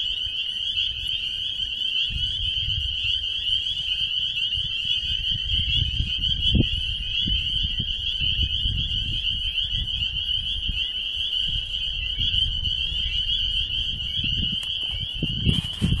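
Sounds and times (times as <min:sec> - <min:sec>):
chorus of frogs calling: 0:00.0 - 0:16.0
low rumbling on microphone: 0:11.4 - 0:16.0.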